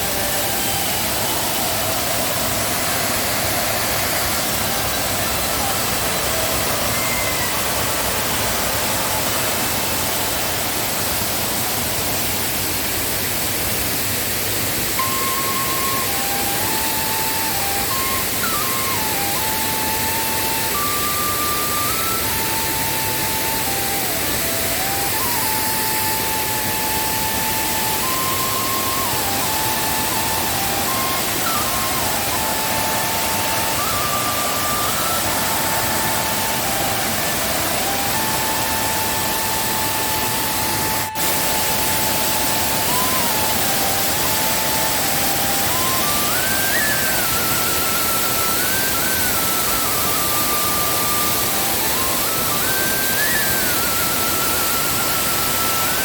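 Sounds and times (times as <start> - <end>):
waterfall roaring: 0.0 - 56.0
simple background melody: 14.9 - 56.0.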